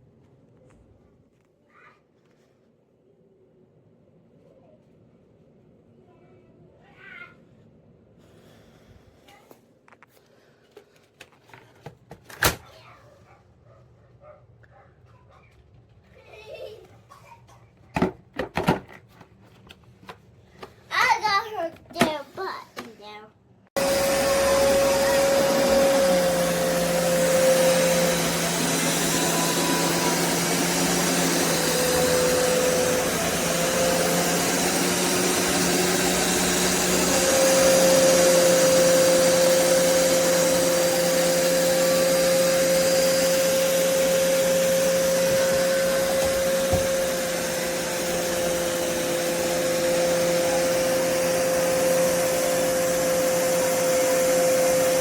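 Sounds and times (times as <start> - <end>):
carpet cleaner motor whine: 23.8 - 55.0.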